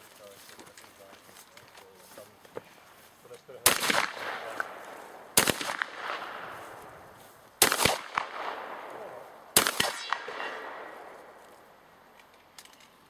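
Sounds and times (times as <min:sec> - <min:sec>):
shotgun shots echoing: 0:03.6 - 0:11.4.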